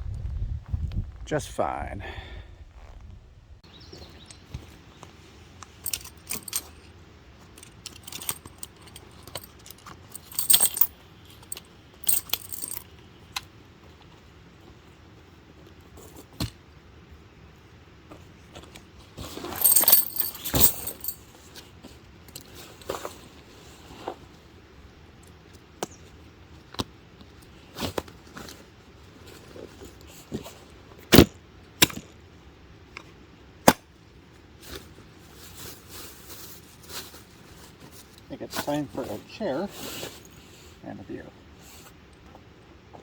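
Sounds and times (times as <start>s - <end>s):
camping gear clicks and knocks: 5.7s - 6.9s, 7.6s - 12.8s, 19.4s - 21.2s
metallic jingling: 5.8s - 6.8s, 7.6s - 12.8s, 19.5s - 21.2s.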